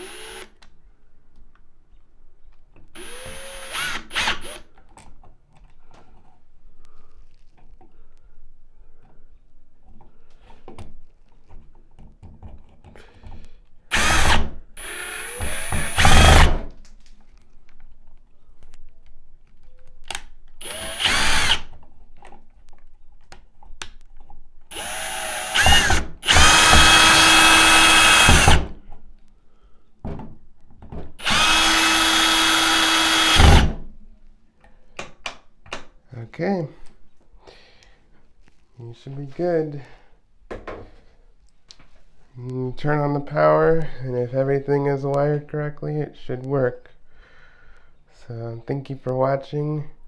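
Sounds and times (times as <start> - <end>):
power drill driving screws: 0.0 - 0.6, 3.0 - 4.6, 13.9 - 16.7, 20.6 - 21.7, 24.7 - 28.8, 31.2 - 33.8.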